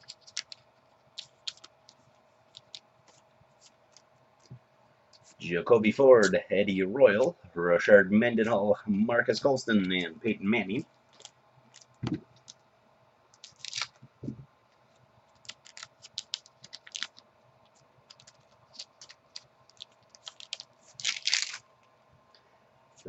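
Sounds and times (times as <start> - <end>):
foil wrapper crinkling: 0.0 - 4.1, 11.1 - 12.6, 13.4 - 14.0, 15.3 - 21.6
cards clicking and rustling: 0.0 - 4.6, 11.1 - 12.6, 13.4 - 14.0, 15.3 - 21.6
soft thumps: 12.0 - 12.3, 14.2 - 14.5.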